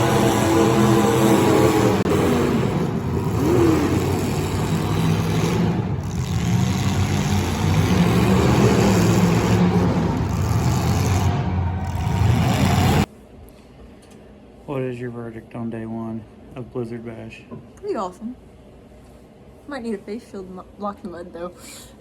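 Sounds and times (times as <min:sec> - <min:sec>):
car engines revving: 0:00.0 - 0:13.1.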